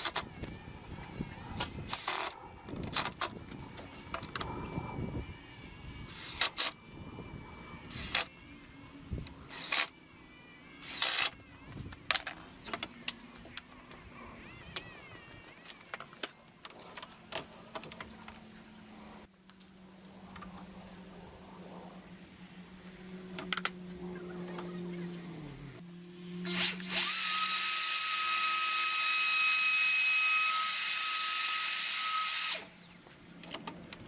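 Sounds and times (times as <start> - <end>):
metal parts scraping: 1.7 - 3.4.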